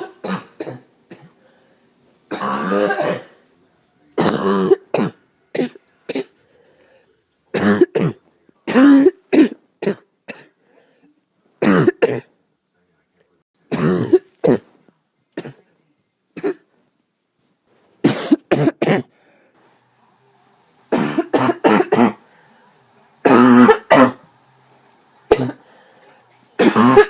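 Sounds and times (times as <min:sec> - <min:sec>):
person coughing: 0:00.0 - 0:01.4, 0:02.3 - 0:03.4, 0:04.2 - 0:06.4, 0:07.6 - 0:10.6, 0:11.6 - 0:12.3, 0:13.7 - 0:14.8, 0:15.4 - 0:15.7, 0:16.4 - 0:16.7, 0:18.0 - 0:19.1, 0:20.9 - 0:22.2, 0:23.2 - 0:24.2, 0:25.3 - 0:25.6, 0:26.6 - 0:27.0.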